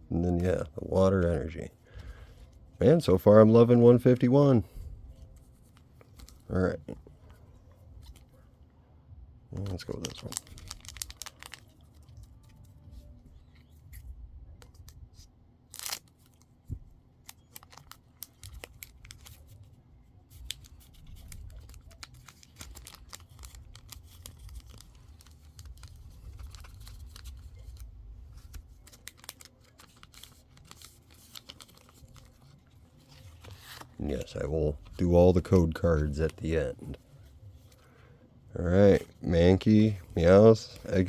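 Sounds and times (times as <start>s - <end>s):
cards crackling and clicking: 9.6s - 14.0s, 14.6s - 38.0s, 38.6s - 41.0s
foil pack tearing and crinkling: 9.7s - 11.8s, 15.7s - 16.4s, 20.4s - 34.3s.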